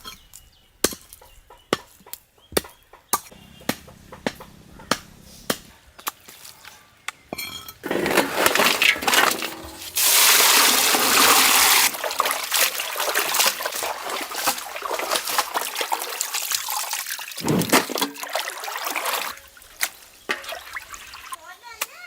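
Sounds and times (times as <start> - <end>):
water pouring: 7.8 - 21.4
water splashing and trickling: 7.8 - 21.6.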